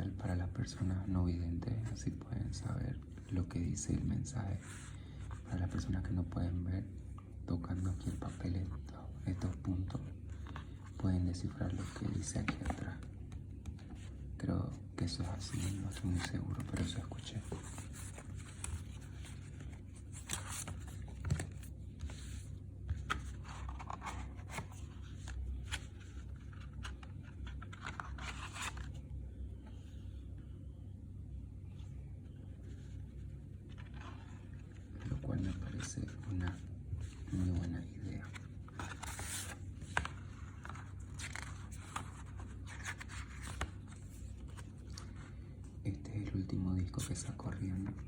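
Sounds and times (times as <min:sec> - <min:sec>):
steady low hum: 0:00.0 - 0:48.0
paper and card rustling: 0:09.2 - 0:14.2, 0:15.1 - 0:29.0, 0:32.6 - 0:45.5.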